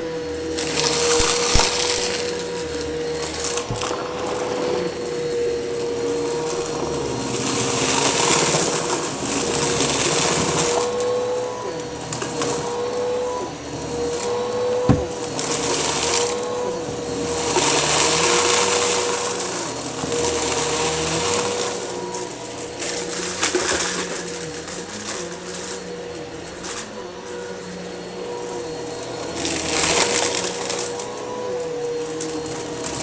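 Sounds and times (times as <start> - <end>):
vacuum cleaner running: 0.0 - 33.0
sharp knock: 14.8 - 15.1.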